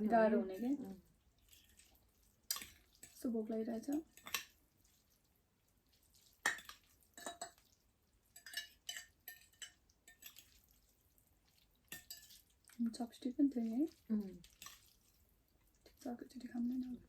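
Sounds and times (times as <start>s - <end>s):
utensils clinking on a bowl: 0.5s - 4.6s, 6.4s - 10.8s, 11.8s - 15.2s.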